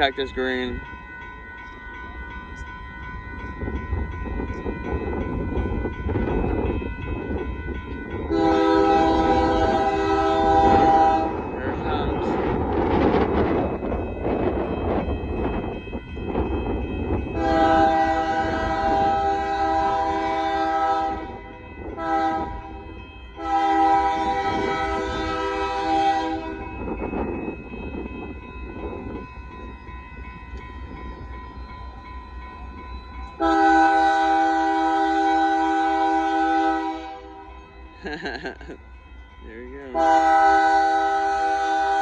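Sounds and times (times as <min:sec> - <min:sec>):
low rumble of train: 0:00.0 - 0:42.0
locomotive air horn blasts: 0:08.3 - 0:11.5, 0:17.4 - 0:21.4, 0:22.0 - 0:22.7, 0:23.4 - 0:26.7, 0:33.4 - 0:37.5, 0:39.9 - 0:42.0.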